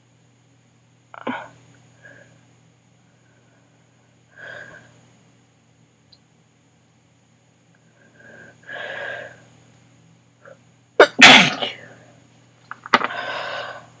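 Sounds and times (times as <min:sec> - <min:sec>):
woman breathing: 0:03.2 - 0:04.9, 0:08.0 - 0:09.5, 0:13.0 - 0:14.0
woman sneezing: 0:11.0 - 0:11.8.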